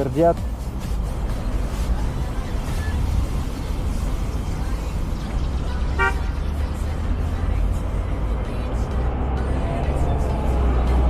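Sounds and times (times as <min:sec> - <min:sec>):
street traffic: 0:00.0 - 0:11.0
wind: 0:00.0 - 0:11.0
car horn beep: 0:06.0 - 0:06.4.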